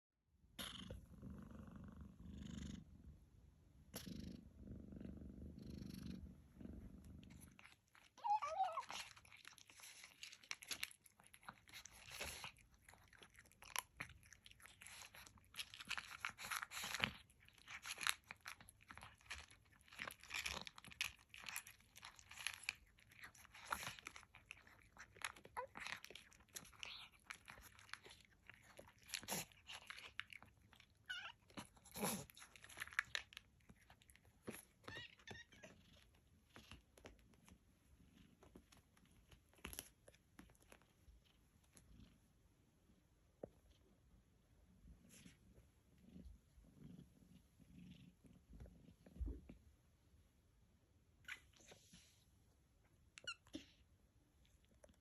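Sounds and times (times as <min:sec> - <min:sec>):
kitten purring: 0:00.5 - 0:50.2
kitten chewing and crunching food: 0:07.2 - 0:42.2
kitten meowing: 0:08.2 - 0:09.0.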